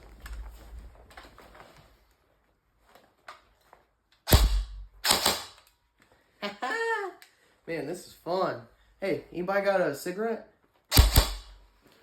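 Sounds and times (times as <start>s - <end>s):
gunshot-like bangs: 4.3s - 5.4s, 10.9s - 11.5s.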